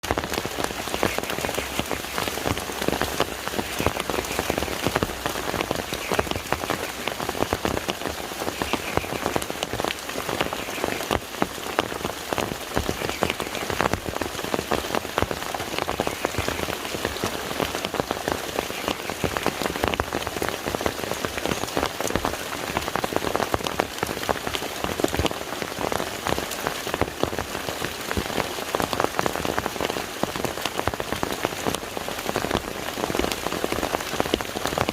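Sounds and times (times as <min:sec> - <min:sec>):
rain falling on a lake: 0:00.0 - 0:34.9.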